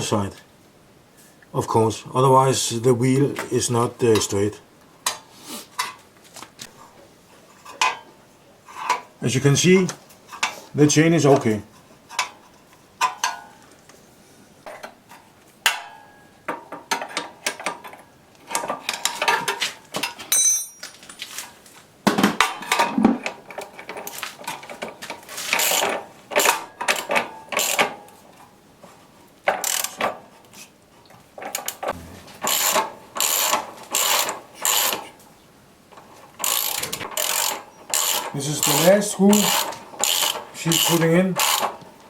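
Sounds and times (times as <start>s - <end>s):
wrench ratcheting: 25.6s - 27.9s, 29.5s - 30.0s, 32.4s - 35.0s, 36.4s - 41.8s
metal wrench clicking: 36.4s - 41.7s.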